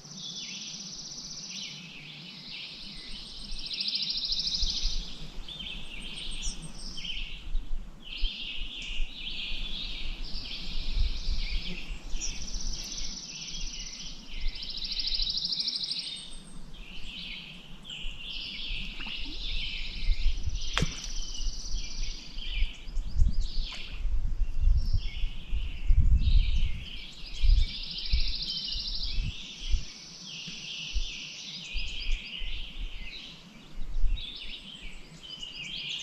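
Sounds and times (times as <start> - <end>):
songbirds singing: 0.0 - 36.0
low gusty rumble: 19.3 - 29.9.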